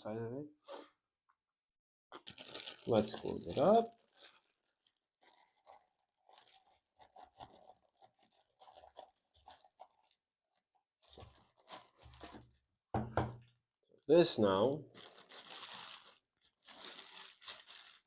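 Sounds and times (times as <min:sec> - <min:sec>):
packaging rustling and crinkling: 0:02.2 - 0:12.7, 0:14.6 - 0:18.0.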